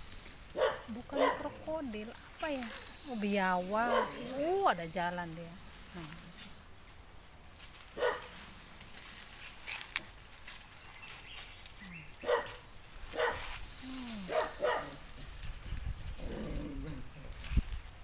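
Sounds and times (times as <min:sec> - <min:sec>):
dog barking: 0:00.5 - 0:01.6, 0:03.8 - 0:04.5, 0:08.0 - 0:08.3, 0:12.2 - 0:13.5, 0:14.2 - 0:15.0.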